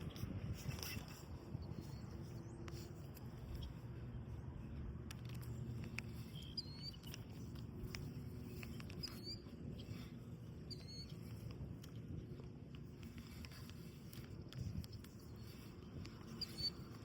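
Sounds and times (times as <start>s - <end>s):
steady low rumble: 0.0s - 17.0s
light clicks: 4.8s - 17.0s
small bird chirping: 5.4s - 11.6s, 14.8s - 17.0s.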